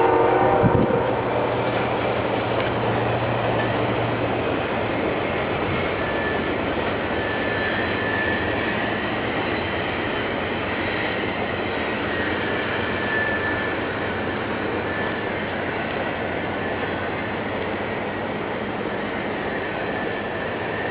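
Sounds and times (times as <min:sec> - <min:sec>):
train wheels rumbling on rail: 0:00.0 - 0:20.9
high wheel squeals: 0:05.0 - 0:20.9.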